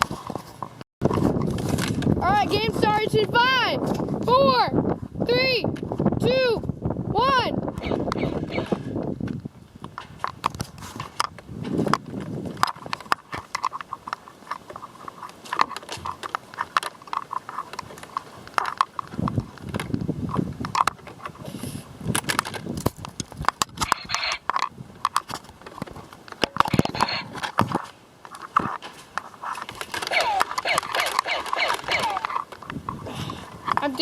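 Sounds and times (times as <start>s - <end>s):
sharp clicks and cracks: 7.7s - 21.4s, 22.0s - 34.0s.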